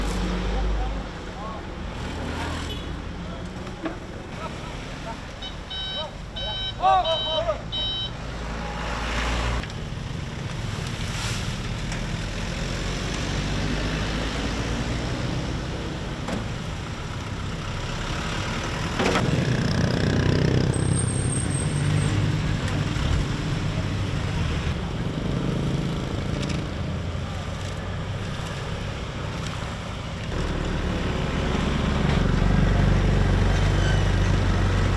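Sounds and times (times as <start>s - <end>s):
road roller engine running: 22.3s - 34.9s.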